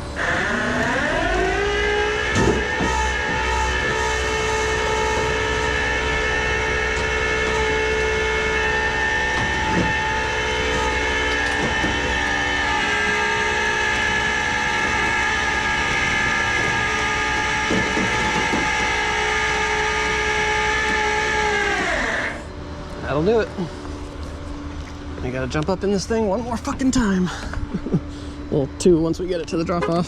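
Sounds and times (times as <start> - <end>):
truck engine at raised idle: 0.0 - 25.2
hydraulic pump whining: 0.0 - 30.0.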